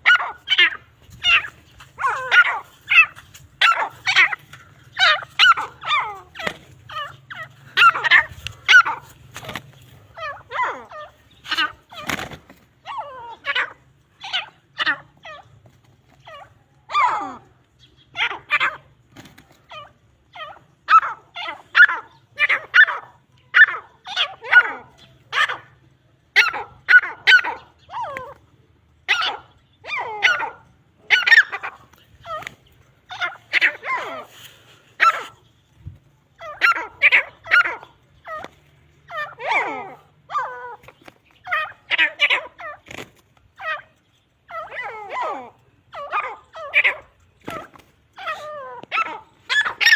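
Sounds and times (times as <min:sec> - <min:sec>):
birds calling harshly: 0:00.0 - 0:49.9.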